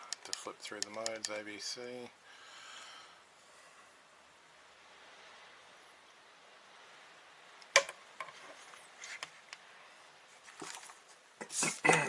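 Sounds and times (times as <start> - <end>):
light taps and clicks: 0.0 - 1.4
sharp click: 0.1 - 1.4
brief rustle: 10.4 - 11.9.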